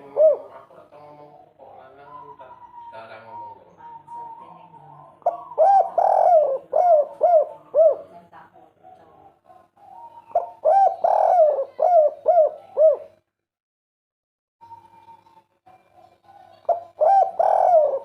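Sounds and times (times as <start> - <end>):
dove cooing: 0.0 - 13.2, 14.6 - 18.0.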